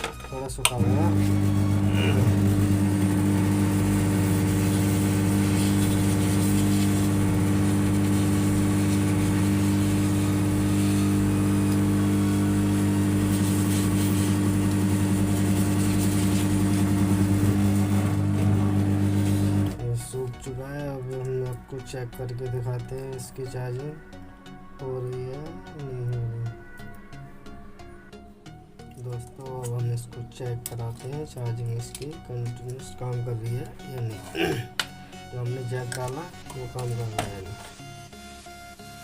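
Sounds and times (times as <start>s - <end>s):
hot air gun blowing: 0.7s - 19.8s.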